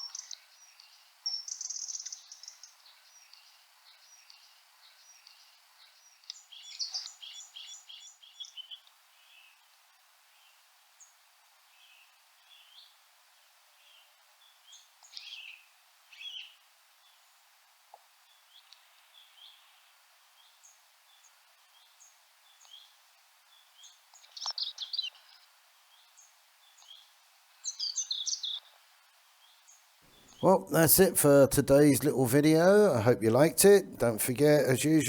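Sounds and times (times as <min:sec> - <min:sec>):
small birds chirping: 0:00.0 - 0:09.6, 0:13.8 - 0:17.3, 0:18.2 - 0:30.7.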